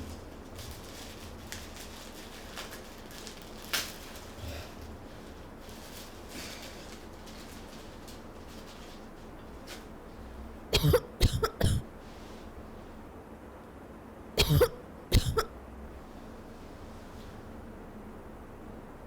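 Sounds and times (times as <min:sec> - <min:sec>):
person coughing: 0:10.7 - 0:11.9, 0:14.4 - 0:15.6.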